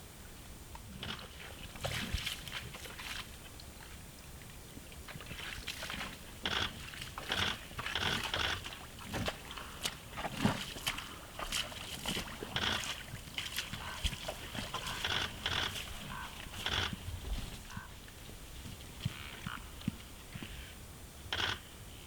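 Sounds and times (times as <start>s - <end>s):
camera buzzing bursts: 21.3s - 21.7s
camera clicks: 21.4s - 21.6s.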